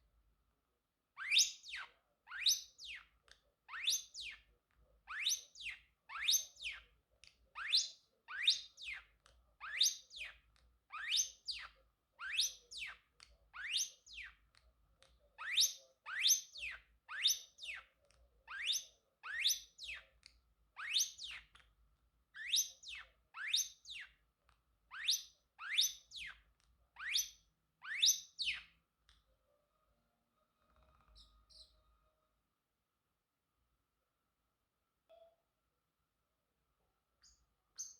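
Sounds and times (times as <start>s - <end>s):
parrot whistled calls: 1.2s - 3.1s, 3.7s - 4.4s, 5.1s - 6.8s, 7.6s - 9.0s, 9.6s - 13.0s, 13.6s - 14.3s, 15.4s - 17.9s, 18.5s - 20.0s, 20.8s - 21.5s, 22.4s - 24.1s, 24.9s - 26.4s, 27.0s - 28.7s.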